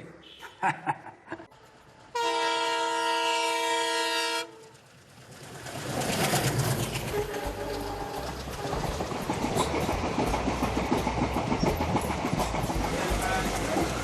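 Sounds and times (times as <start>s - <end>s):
train rumbling on rails: 1.4s - 14.0s
train horn: 2.1s - 4.8s, 7.0s - 9.0s.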